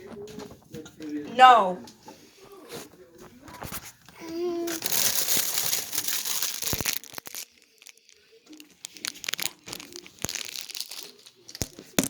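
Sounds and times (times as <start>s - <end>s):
packaging crinkling and tearing: 4.6s - 12.0s.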